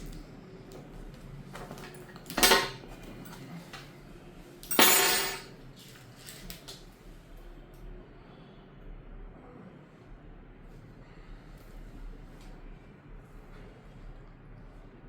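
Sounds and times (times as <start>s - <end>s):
hard objects clattering: 1.6s - 2.9s, 4.6s - 5.5s.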